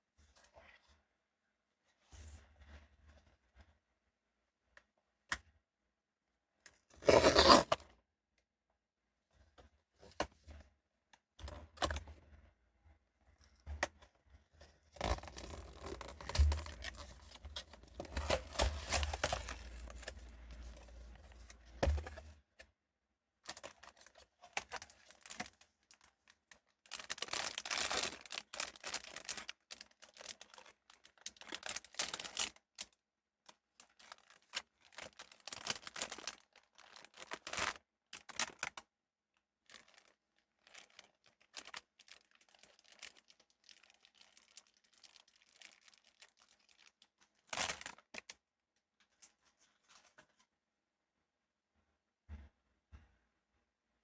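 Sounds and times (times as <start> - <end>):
packaging crinkling and rustling: 7.0 - 7.8, 15.0 - 22.3, 23.4 - 32.9, 33.5 - 38.9, 39.6 - 48.4
packaging tearing: 7.0 - 7.8, 15.0 - 21.0, 26.9 - 29.5, 34.9 - 37.7.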